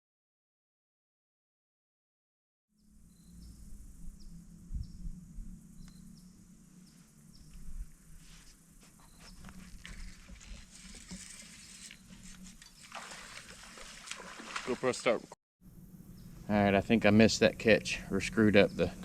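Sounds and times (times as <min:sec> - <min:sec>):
low rumble: 0:03.0 - 0:08.2.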